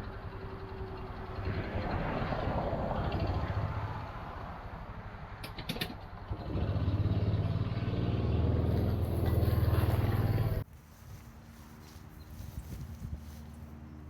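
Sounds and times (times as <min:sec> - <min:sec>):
small vehicle engine running: 0:00.0 - 0:04.4, 0:05.5 - 0:10.6.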